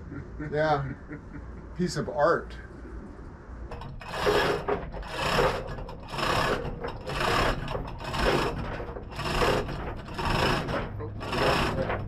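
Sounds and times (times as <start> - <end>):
rhythmic rasping strokes: 3.7 - 12.0.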